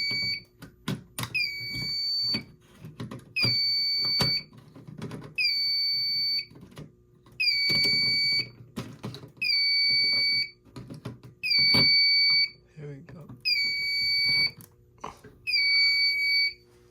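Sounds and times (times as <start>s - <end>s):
fire alarm tone blasts: 0.0s - 0.5s, 1.4s - 2.5s, 3.4s - 4.5s, 5.4s - 6.5s, 7.4s - 8.6s, 9.4s - 10.6s, 11.4s - 12.6s, 13.4s - 14.6s, 15.5s - 16.6s.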